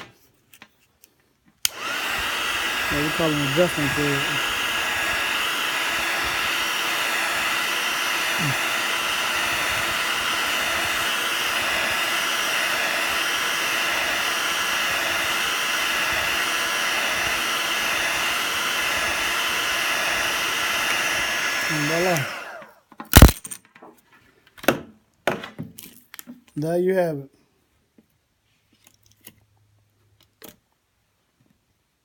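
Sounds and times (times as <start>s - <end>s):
heat gun blowing: 1.6s - 23.4s.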